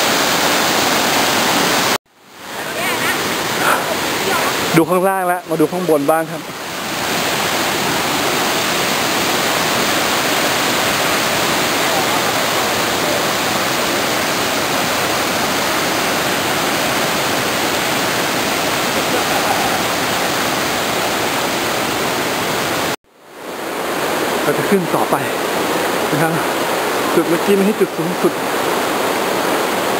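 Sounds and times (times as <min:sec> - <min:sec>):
waterfall pouring: 0:02.8 - 0:23.0.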